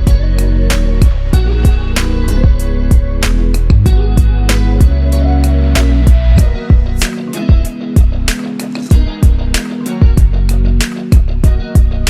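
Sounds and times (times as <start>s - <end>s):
low bass notes dropping in pitch: 0.0s - 8.3s.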